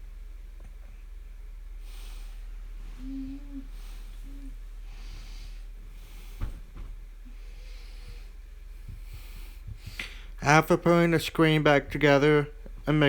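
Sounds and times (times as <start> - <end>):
person breathing softly: 1.8 - 10.4.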